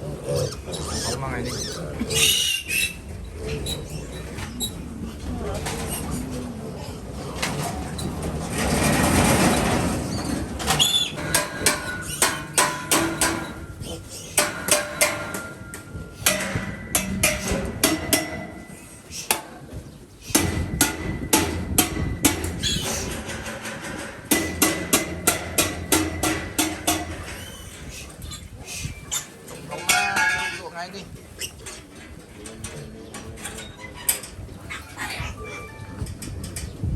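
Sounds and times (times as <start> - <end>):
sharp knocks and clatters: 7.5 - 13.8, 14.4 - 18.7, 20.4 - 27.5.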